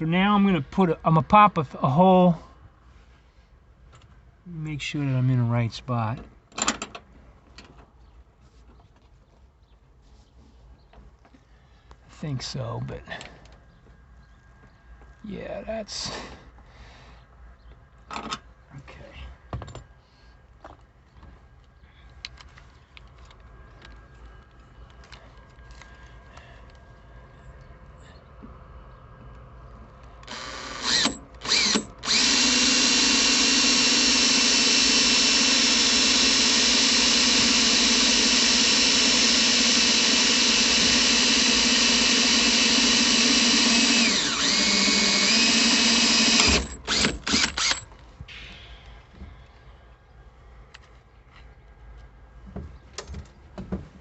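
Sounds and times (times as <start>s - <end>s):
electric drill boring sheet metal: 30.3s - 47.8s
faint handling sounds: 49.1s - 53.5s.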